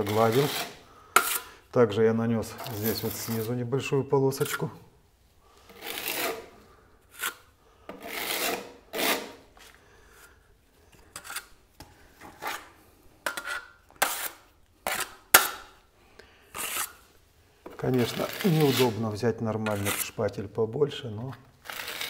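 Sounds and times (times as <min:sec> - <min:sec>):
spatula scraping plaster on a wall: 0:00.0 - 0:01.5, 0:02.4 - 0:03.7, 0:05.7 - 0:09.7, 0:11.0 - 0:11.6, 0:12.2 - 0:15.7, 0:16.5 - 0:17.0, 0:17.6 - 0:20.3, 0:21.6 - 0:22.0.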